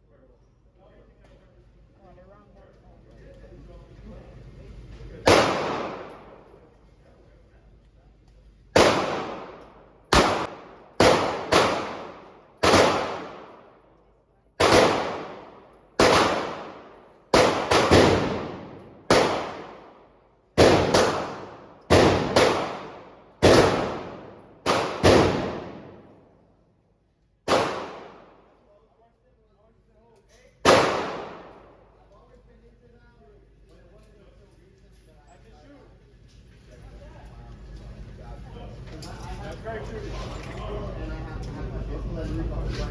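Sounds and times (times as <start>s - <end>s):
gunshots with reverberant tail: 5.3s - 6.5s, 8.8s - 13.8s, 14.6s - 26.3s, 27.5s - 28.5s, 30.6s - 31.8s.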